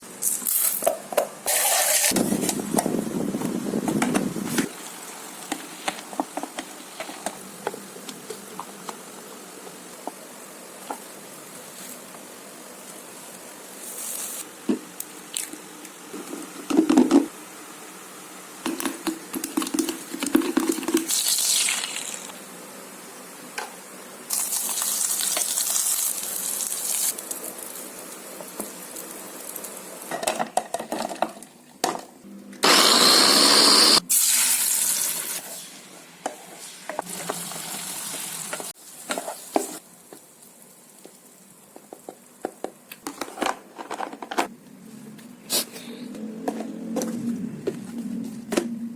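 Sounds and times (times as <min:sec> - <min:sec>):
food sizzling in a pan: 0:20.6 - 0:22.4, 0:24.3 - 0:30.6, 0:32.7 - 0:42.5.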